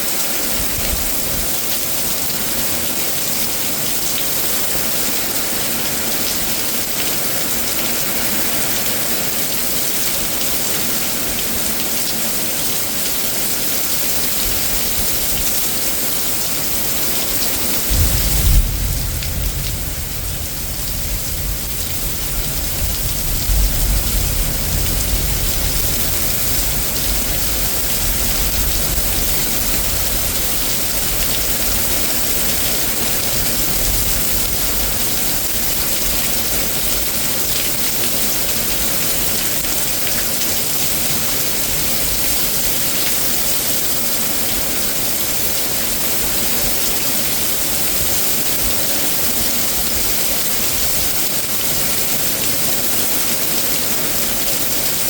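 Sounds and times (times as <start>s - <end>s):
heavy rain: 0.0s - 55.0s
low thunder rumble: 17.8s - 30.2s.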